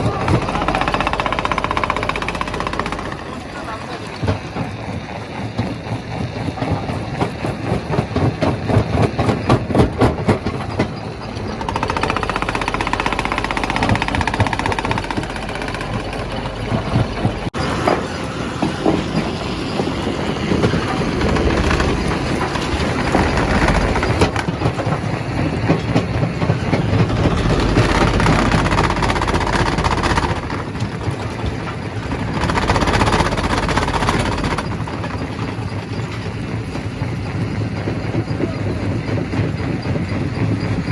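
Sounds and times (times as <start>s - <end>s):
rock crusher grinding drone: 0.0s - 6.9s, 10.4s - 35.2s.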